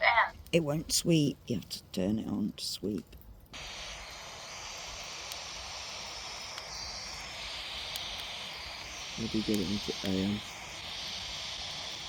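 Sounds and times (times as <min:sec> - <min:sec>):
radio static hiss: 0:03.6 - 0:12.0.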